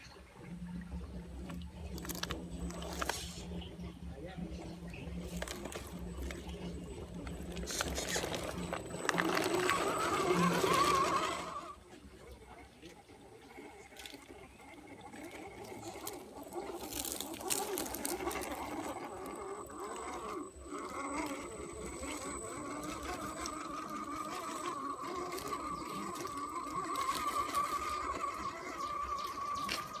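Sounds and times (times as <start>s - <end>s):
toy truck electric motor whining: 1.2s - 12.0s, 13.0s - 30.0s
clicks and crackles: 1.4s - 3.4s, 5.2s - 11.2s, 15.8s - 28.5s.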